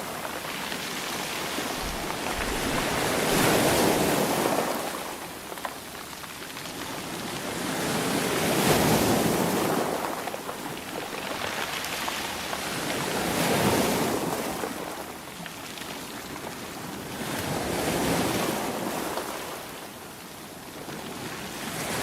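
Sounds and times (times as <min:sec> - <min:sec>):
sea waves washing: 0:00.1 - 0:05.6.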